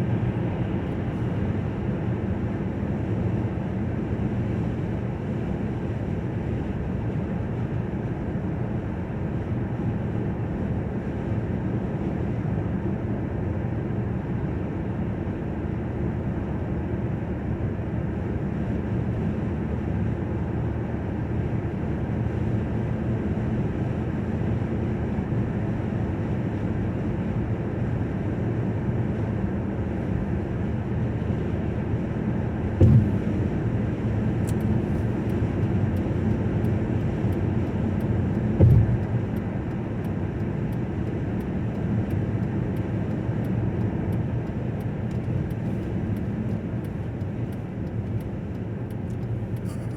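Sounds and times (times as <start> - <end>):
car engine and tyres rumbling: 0.0 - 49.9
brief knock: 32.8 - 33.5, 38.6 - 39.2.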